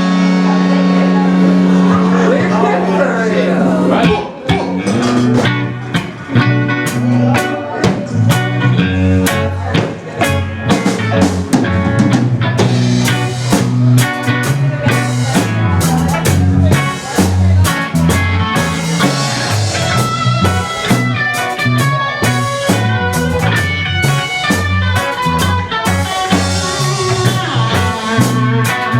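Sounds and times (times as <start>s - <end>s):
bass line: 0.0s - 28.9s
drum kit beat: 0.0s - 28.9s
electric guitar: 0.0s - 28.9s.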